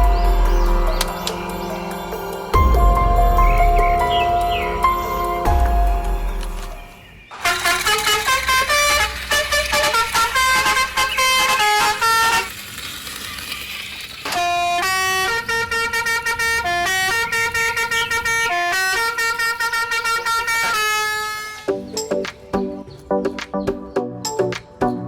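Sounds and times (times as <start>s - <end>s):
loud horn-like tune: 0.0s - 12.7s, 14.3s - 21.7s.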